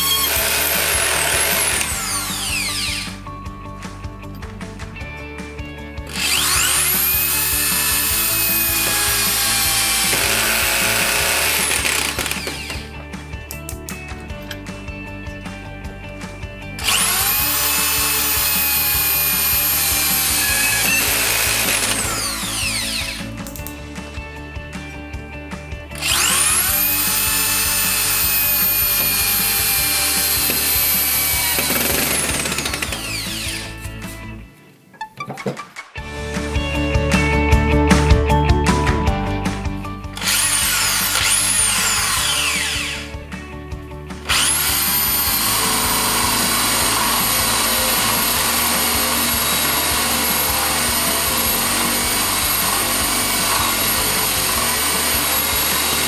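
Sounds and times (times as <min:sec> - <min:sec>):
drill motor whine: 0:00.0 - 0:03.2, 0:06.1 - 0:12.9, 0:16.8 - 0:23.4, 0:26.0 - 0:33.8, 0:40.2 - 0:43.1, 0:44.3 - 0:56.0
background music: 0:00.0 - 0:56.0.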